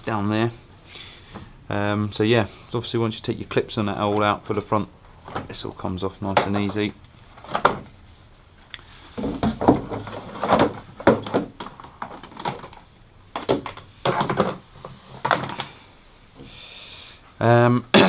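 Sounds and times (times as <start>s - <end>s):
plastic trim clunks and rattles: 7.4s - 7.9s, 9.2s - 15.8s.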